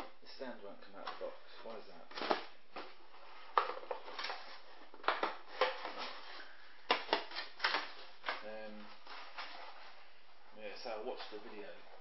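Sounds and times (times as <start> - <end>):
plastic and cardboard packaging clicks: 2.1 - 9.6.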